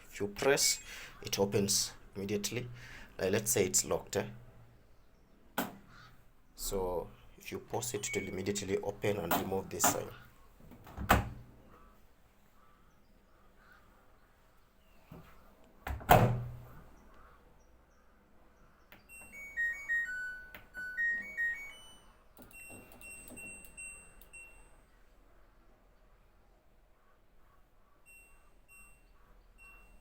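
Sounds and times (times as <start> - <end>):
short beeps on one pitch: 8.0 - 8.5, 28.1 - 30.0.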